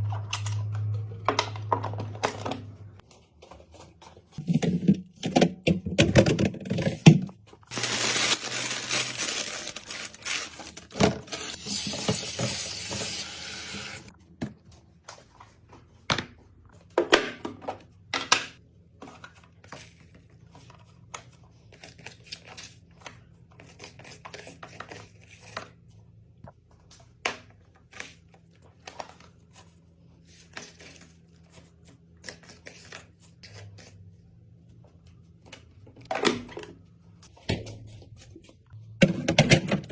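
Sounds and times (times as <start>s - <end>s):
items clicking and knocking: 0.0s - 8.1s, 39.0s - 39.9s
containers and packaging clattering: 0.0s - 14.1s.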